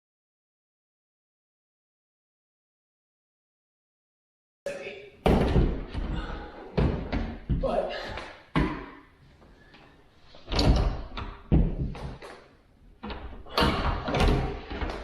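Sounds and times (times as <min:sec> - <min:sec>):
knocks and thumps of cabinet: 0:05.2 - 0:07.7, 0:10.5 - 0:12.2, 0:13.5 - 0:15.0.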